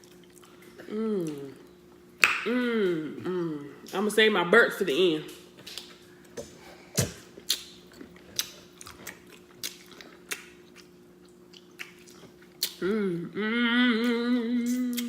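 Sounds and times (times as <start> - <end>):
person humming: 0.8 - 1.6, 2.4 - 3.8, 12.8 - 15.0
wet mouth smacking while chewing: 5.6 - 12.8.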